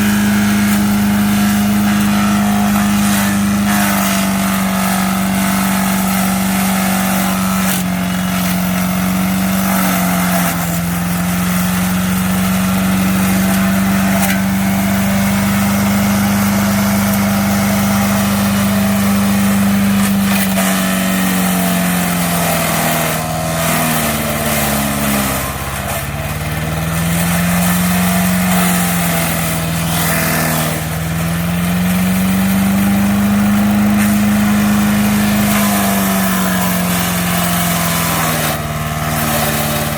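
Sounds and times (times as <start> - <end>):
wood chipper engine running: 0.0 - 39.9
wood knocking through chipper: 0.0 - 39.9.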